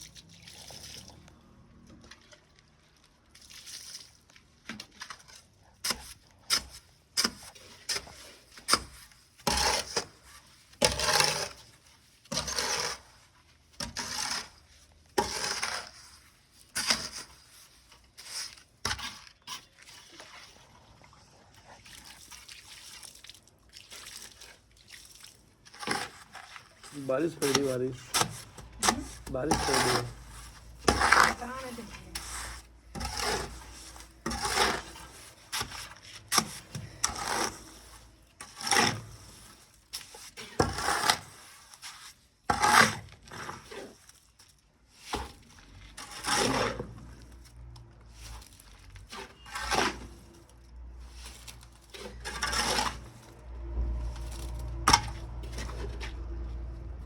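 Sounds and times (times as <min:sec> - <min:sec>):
water splashing: 0:00.0 - 0:05.5, 0:19.6 - 0:36.8.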